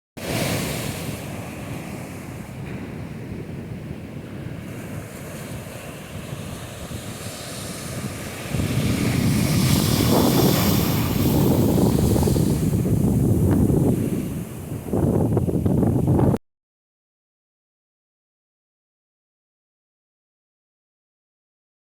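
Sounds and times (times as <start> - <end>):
surf washing on beach: 0.2 - 16.4
wind on microphone: 0.2 - 16.4.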